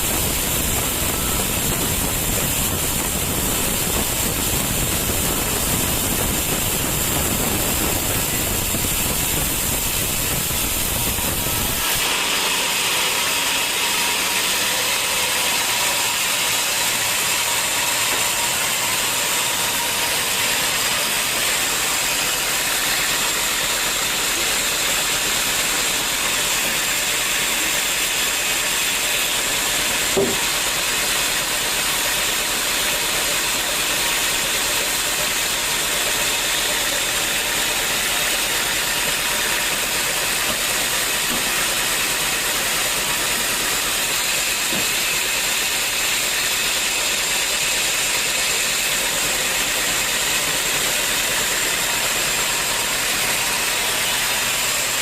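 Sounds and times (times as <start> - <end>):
sawmill saw hissing: 0.0 - 55.0
short knock: 30.2 - 30.5.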